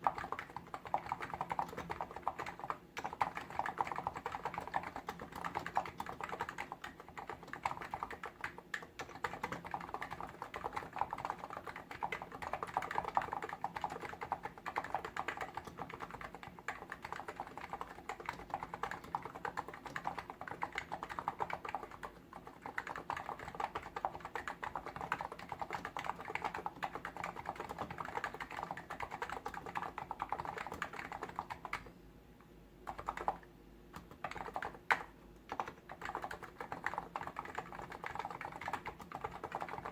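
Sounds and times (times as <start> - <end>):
fast keyboard typing: 0.0 - 31.9, 32.8 - 39.9.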